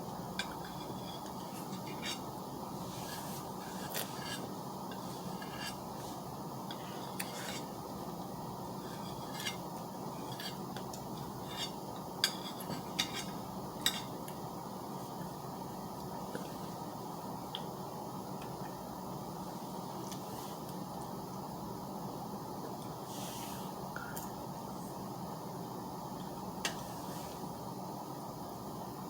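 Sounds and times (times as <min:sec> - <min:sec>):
low background hum: 0:00.0 - 0:29.0
utensil scraping a dish: 0:00.4 - 0:07.8, 0:08.8 - 0:14.2.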